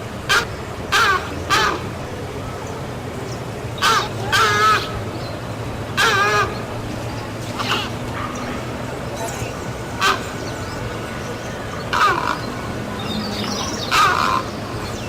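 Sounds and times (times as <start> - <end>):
heron squawking: 0.3 - 2.0, 3.7 - 5.1, 5.9 - 6.8, 7.4 - 8.7, 10.0 - 10.6, 11.8 - 12.8, 13.4 - 14.7.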